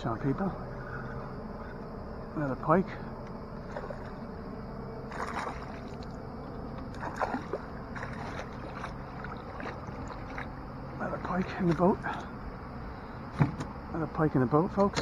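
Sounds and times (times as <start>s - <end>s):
water splashing against canoe: 5.1s - 6.2s, 6.8s - 12.3s.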